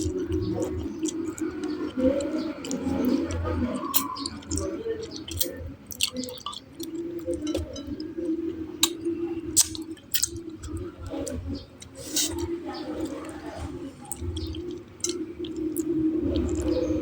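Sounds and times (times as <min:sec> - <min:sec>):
wet mouth clicks and smacks: 0:00.0 - 0:07.8, 0:08.8 - 0:13.3, 0:14.1 - 0:16.8
chewing: 0:00.0 - 0:17.0.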